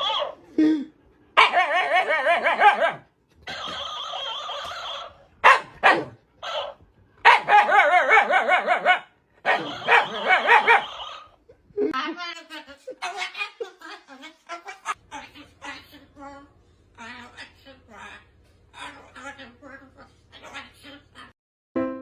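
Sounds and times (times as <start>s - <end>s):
dog yipping: 0.0s - 0.4s, 1.4s - 11.4s
dog howling and whining: 1.4s - 3.0s.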